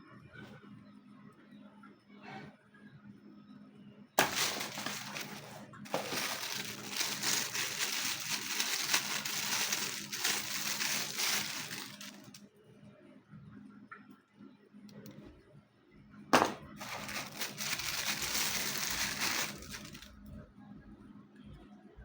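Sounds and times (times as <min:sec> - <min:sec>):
crackling rustling handling noise: 0:04.2 - 0:12.5, 0:16.4 - 0:20.4.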